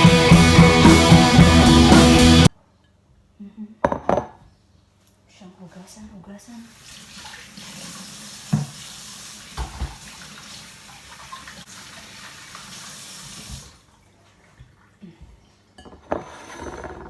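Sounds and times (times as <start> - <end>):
tap running into a sink: 6.8 - 13.8
knocks against a sink: 8.5 - 8.8, 9.6 - 10.0.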